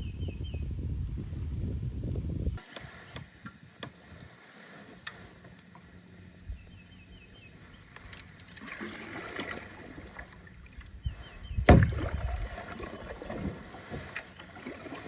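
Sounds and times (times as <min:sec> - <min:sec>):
kayak paddle strokes in water: 0:02.6 - 0:15.0
water splashes and drips: 0:08.0 - 0:10.9, 0:11.6 - 0:15.0.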